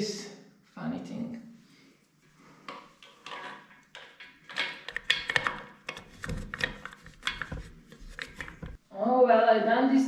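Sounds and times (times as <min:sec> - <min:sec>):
clicks and knocks of toilet fittings: 0:02.6 - 0:08.8.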